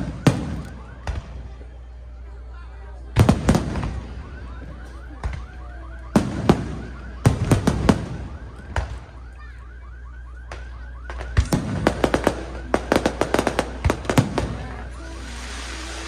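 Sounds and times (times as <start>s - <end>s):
firework crackle: 11.1s - 16.0s
firework shells bursting: 11.2s - 16.0s.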